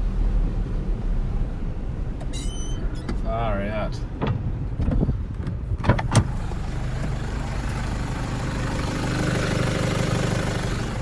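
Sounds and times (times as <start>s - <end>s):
vehicle engine running: 6.2s - 11.0s.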